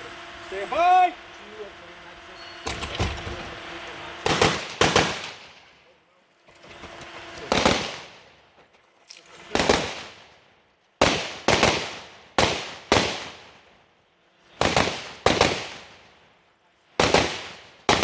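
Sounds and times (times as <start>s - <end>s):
rifle shots echoing: 4.2s - 5.8s, 7.5s - 8.3s, 9.5s - 10.4s, 11.0s - 13.6s, 14.6s - 16.2s, 17.0s - 18.0s.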